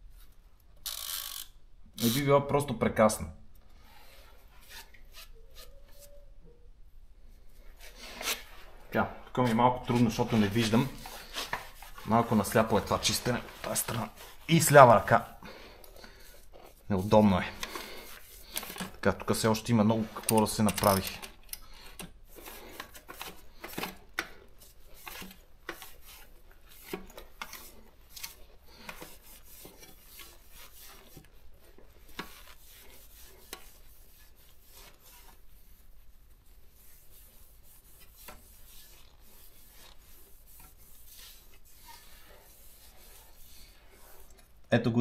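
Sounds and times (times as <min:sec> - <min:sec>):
brush scrubbing typewriter: 0:17.0 - 0:21.3.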